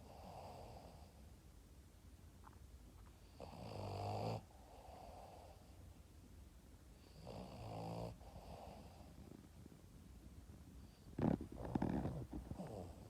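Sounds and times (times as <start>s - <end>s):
dog snoring: 0.0s - 1.2s, 3.2s - 5.7s, 7.0s - 9.4s, 10.8s - 13.0s.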